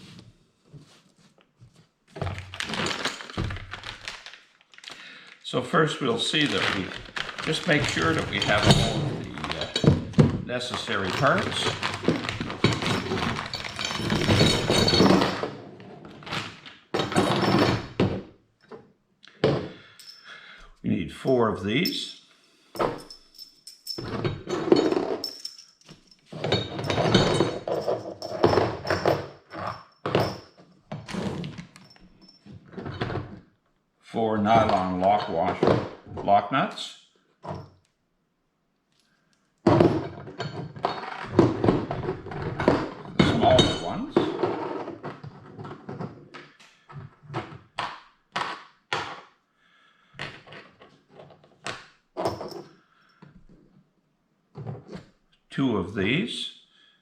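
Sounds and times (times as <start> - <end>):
metal hardware clinking and clattering: 6.3 - 15.6, 22.8 - 30.7, 52.2 - 53.2.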